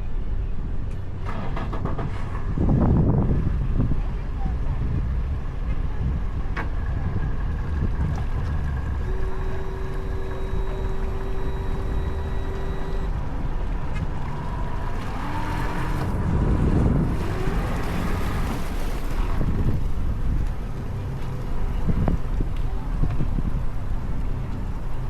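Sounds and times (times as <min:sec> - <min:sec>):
rush of noise: 0:00.0 - 0:25.0
wind on microphone: 0:01.8 - 0:25.0
motor hum: 0:05.0 - 0:25.0.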